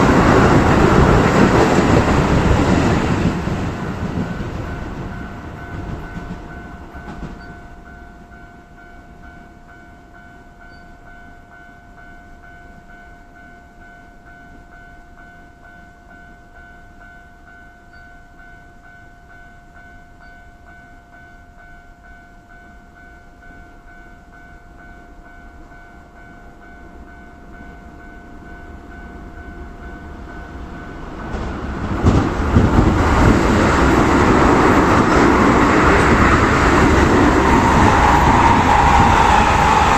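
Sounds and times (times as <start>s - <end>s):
train rumble: 0.0s - 10.7s, 23.4s - 39.9s
level crossing warning bell: 0.0s - 39.9s
passing electric train: 0.0s - 39.9s.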